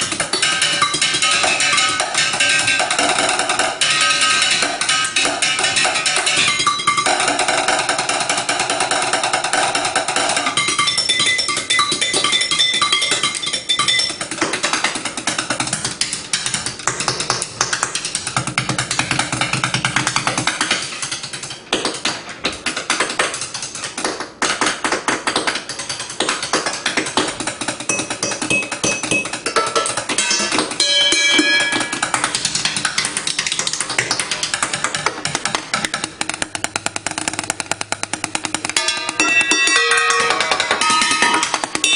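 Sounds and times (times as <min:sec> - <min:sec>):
metal pans ringing: 0:00.0 - 0:15.2, 0:27.8 - 0:33.3, 0:38.5 - 0:41.9
chopsticks drumming on pots and pans: 0:00.0 - 0:41.9.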